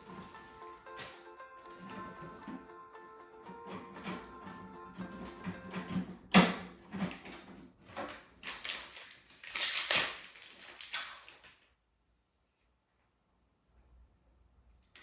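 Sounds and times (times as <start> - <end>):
handling clicks and knocks: 3.4 - 8.8.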